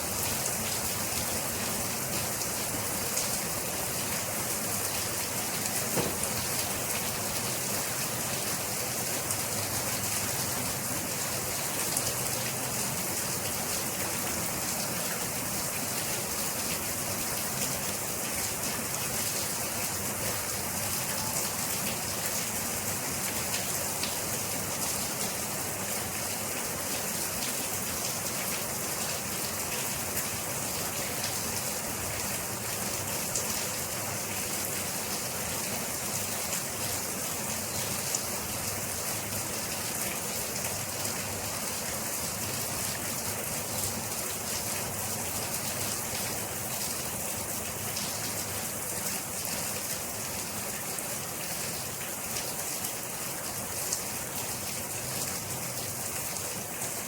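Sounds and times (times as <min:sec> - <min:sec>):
steady rain falling: 0:00.0 - 0:57.0.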